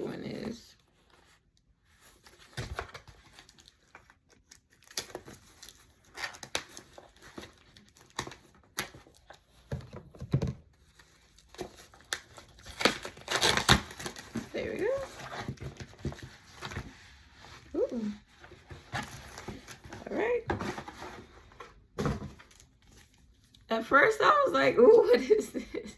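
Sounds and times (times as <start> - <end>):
packaging crinkling and tearing: 1.9 - 9.8, 10.8 - 20.2.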